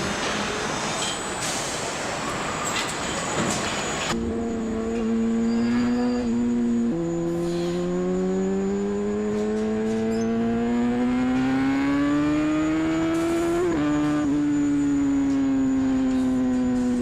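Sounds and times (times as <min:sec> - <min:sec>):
motorcycle engine accelerating: 0:04.1 - 0:17.0.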